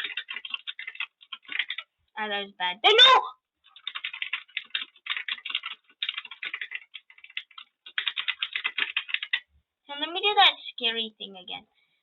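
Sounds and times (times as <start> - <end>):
fast typing on keyboard: 0.0 - 2.0, 3.6 - 10.2.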